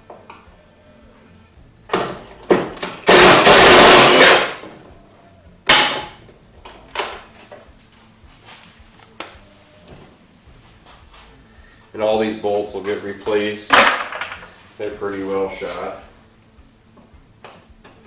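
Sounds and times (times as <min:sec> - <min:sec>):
impact wrench burst: 0:02.9 - 0:04.7.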